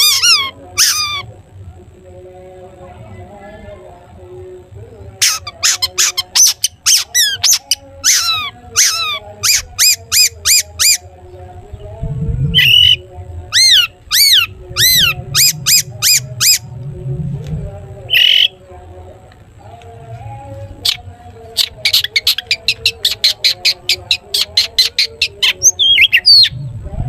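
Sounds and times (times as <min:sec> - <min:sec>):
harsh rasping bird calls: 0:00.0 - 0:01.4, 0:05.2 - 0:11.1, 0:12.5 - 0:16.7, 0:18.1 - 0:18.6, 0:20.8 - 0:26.7.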